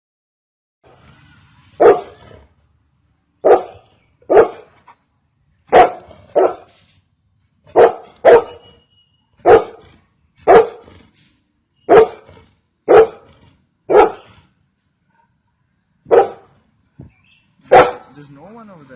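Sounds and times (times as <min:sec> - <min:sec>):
dog barking: 0:01.8 - 0:02.2, 0:03.4 - 0:04.8, 0:05.7 - 0:06.7, 0:07.7 - 0:08.8, 0:09.4 - 0:10.9, 0:11.9 - 0:13.3, 0:13.9 - 0:14.4, 0:15.1 - 0:16.6, 0:17.6 - 0:18.2.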